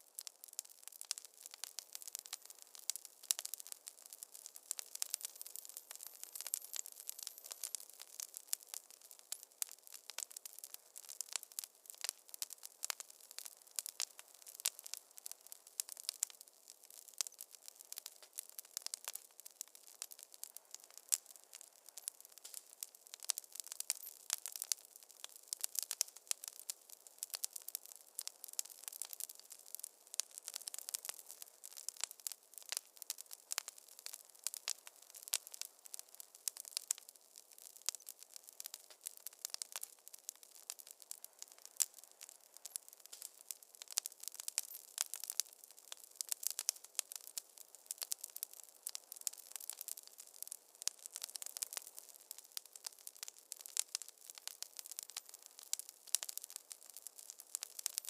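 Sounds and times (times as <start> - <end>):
soft fire hiss: 0.0 - 58.0
wood fire popping and snapping: 0.0 - 58.0.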